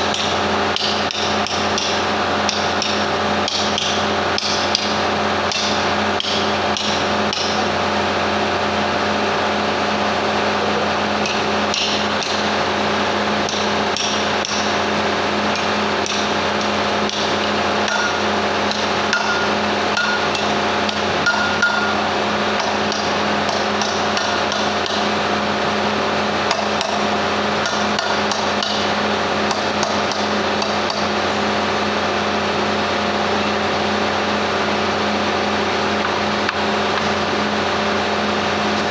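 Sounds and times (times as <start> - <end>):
steady machine hum: 0.0 - 38.9
hammer tapping on metal: 17.9 - 22.0, 27.6 - 28.9.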